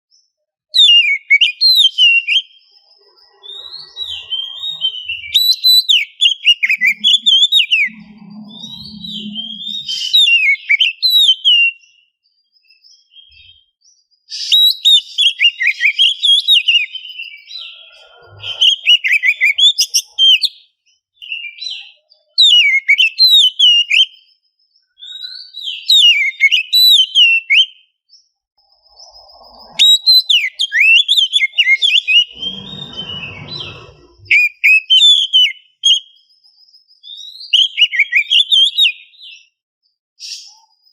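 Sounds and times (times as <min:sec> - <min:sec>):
bird singing whistled notes: 0:00.1 - 0:39.6
low rumbling noise: 0:07.0 - 0:10.0, 0:32.3 - 0:34.3.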